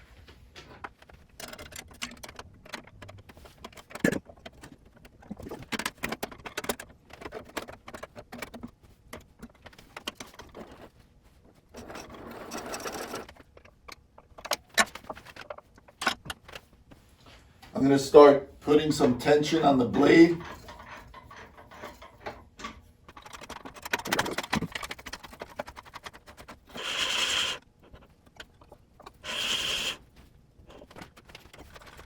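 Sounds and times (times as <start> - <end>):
metallic clicks and rattles: 0.8 - 10.9, 18.8 - 26.7, 30.6 - 32.0.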